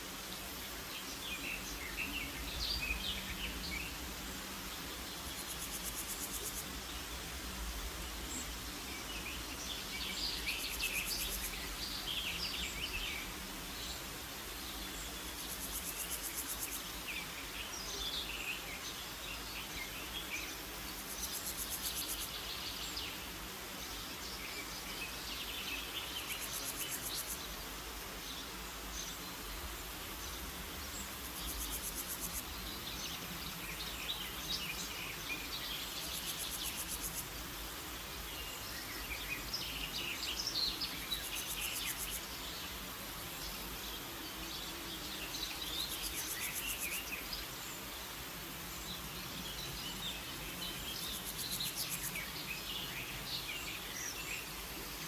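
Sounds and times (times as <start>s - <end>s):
high insect trill: 5.1s - 17.4s, 20.4s - 22.5s, 25.0s - 28.0s, 29.5s - 55.0s.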